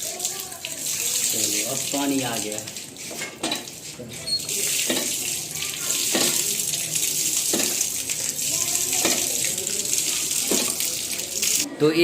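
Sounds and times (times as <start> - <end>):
water gushing from hand pump: 0.0 - 11.7
hand pump knocking: 6.0 - 6.5, 10.4 - 10.9.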